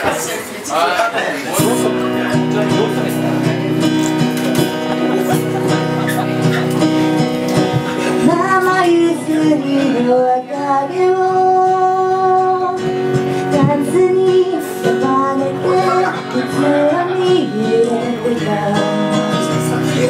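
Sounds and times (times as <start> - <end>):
guitar accompaniment: 1.5 - 20.0
women singing: 8.2 - 19.7.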